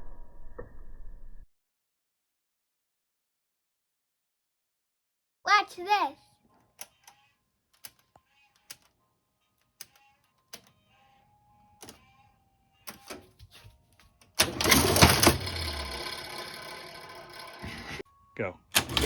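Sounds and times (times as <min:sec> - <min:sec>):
cash register key clicks: 0:12.9 - 0:13.3, 0:14.2 - 0:18.0, 0:18.7 - 0:19.0
cash register mechanical clatter: 0:14.3 - 0:18.0, 0:18.7 - 0:19.0.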